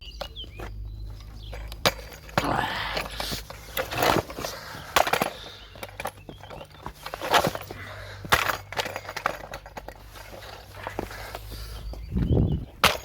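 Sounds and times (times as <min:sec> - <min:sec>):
knocks and cracks: 0:12.7 - 0:13.0.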